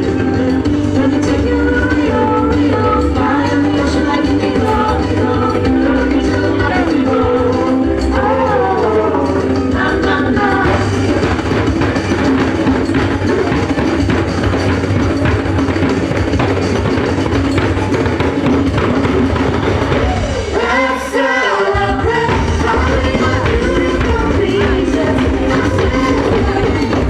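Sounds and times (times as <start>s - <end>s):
person singing: 0.0s - 12.8s, 19.9s - 27.0s
samba music with percussion: 0.0s - 27.0s.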